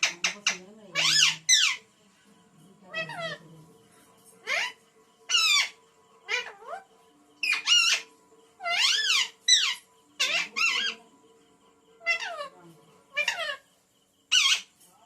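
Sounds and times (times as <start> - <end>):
parakeet shrill calls: 0.0 - 1.9, 4.4 - 6.8, 7.4 - 11.0, 14.3 - 14.7.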